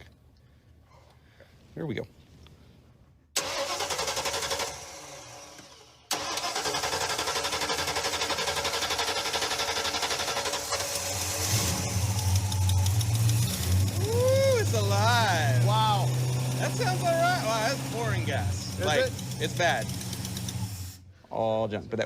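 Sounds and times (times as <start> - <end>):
car starter cranking: 3.4 - 21.0
car engine running: 6.6 - 20.9.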